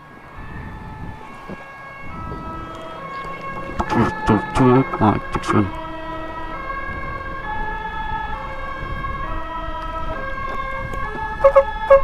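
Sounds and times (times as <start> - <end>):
electronic siren: 0.0 - 12.0
rumble of engines and traffic: 0.0 - 12.0.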